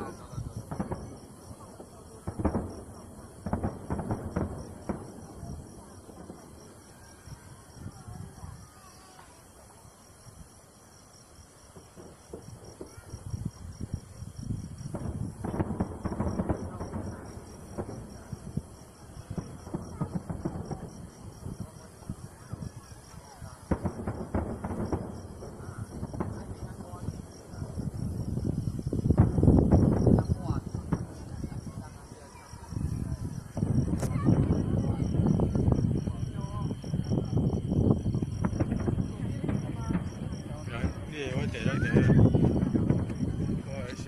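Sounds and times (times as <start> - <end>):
fireworks bangs: 0.0 - 9.8, 11.4 - 44.0
crickets chirping: 0.0 - 44.0.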